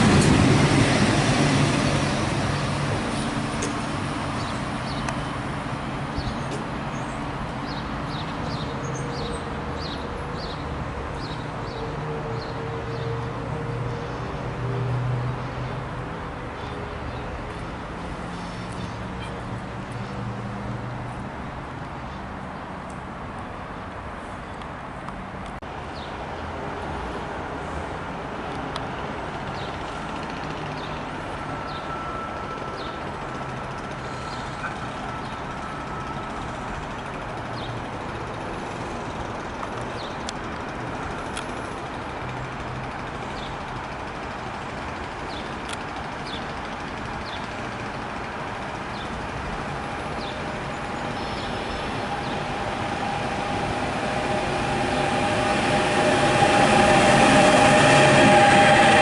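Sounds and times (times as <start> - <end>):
approaching train humming: 0.0 - 21.7, 26.7 - 59.0
vehicle rumble: 27.8 - 59.0.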